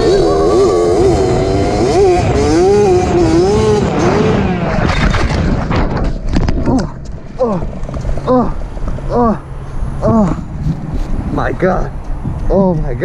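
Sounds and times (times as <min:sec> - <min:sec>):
two-stroke engine revving: 0:00.0 - 0:05.4
sharp knocks and clatter: 0:04.8 - 0:09.0
wind noise on microphone: 0:09.8 - 0:13.0.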